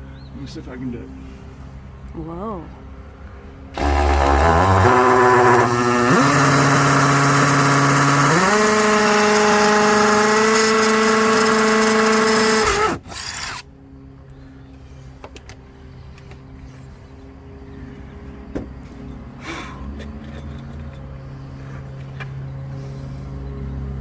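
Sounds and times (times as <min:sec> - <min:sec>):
cordless drill driving screw: 0:03.8 - 0:13.6.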